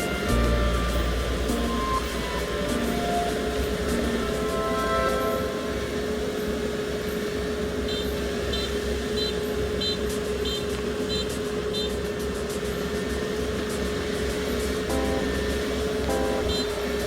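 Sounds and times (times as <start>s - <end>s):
combine harvester rumbling: 0.0s - 17.0s
short high warning beeps: 16.1s - 16.9s.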